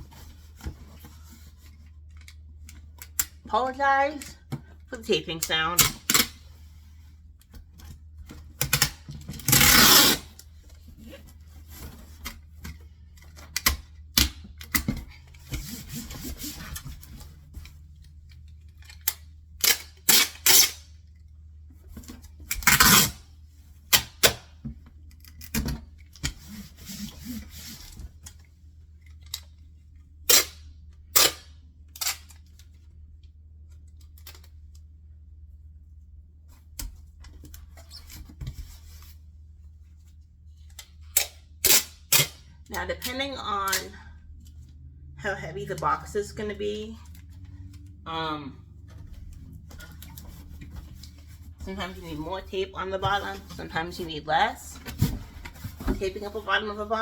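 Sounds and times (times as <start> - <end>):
packing tape pulled off roll: 8.8 - 10.5, 22.6 - 23.2.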